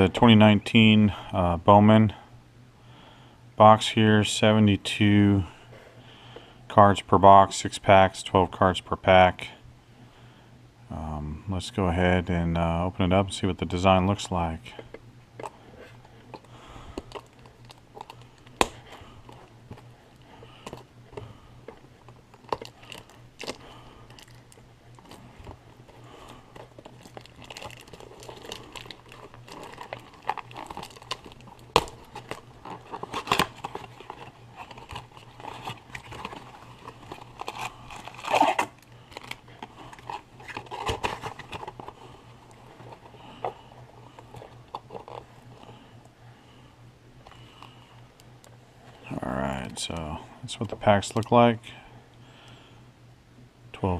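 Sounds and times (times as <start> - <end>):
wrapping crinkling and rustling: 14.6 - 46.1
cardboard box being torn open: 26.6 - 39.4.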